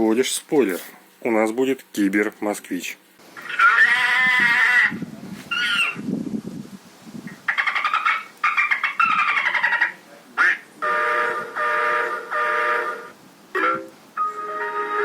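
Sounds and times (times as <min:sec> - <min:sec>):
multi-tone horn chord blasts: 0:10.8 - 0:15.0.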